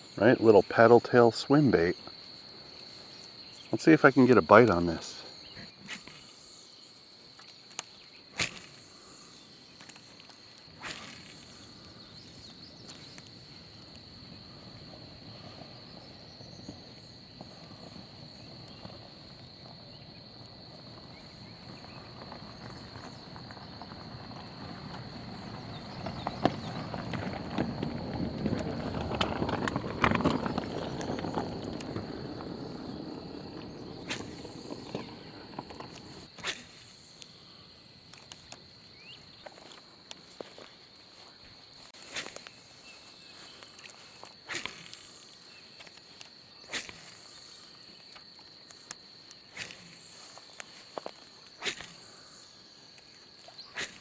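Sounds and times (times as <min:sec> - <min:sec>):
insects droning: 0:00.0 - 0:54.0
rustling: 0:39.4 - 0:52.3.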